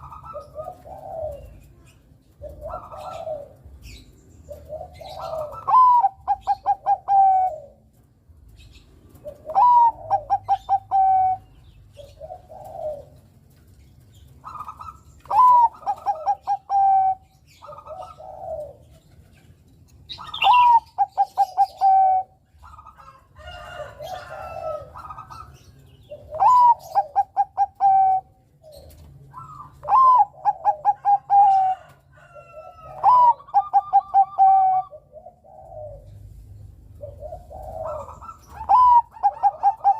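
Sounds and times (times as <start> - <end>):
dove cooing song: 0.0 - 39.9.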